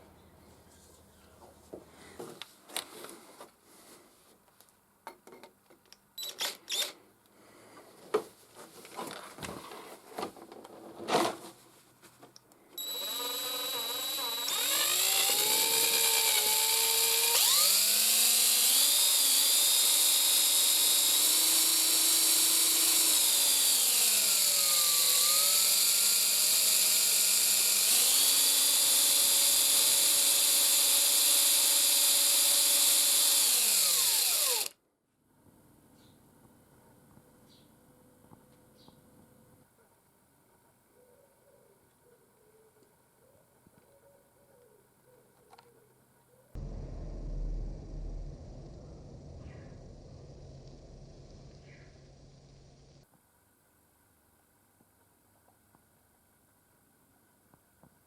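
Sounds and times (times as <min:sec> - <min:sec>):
power tool motor whining: 0:12.8 - 0:34.8, 0:46.6 - 0:53.0.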